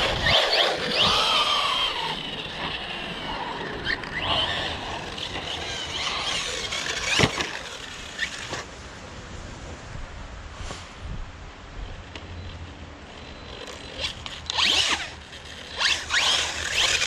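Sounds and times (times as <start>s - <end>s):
electric rc car squealing: 0.0s - 8.7s, 13.1s - 17.0s.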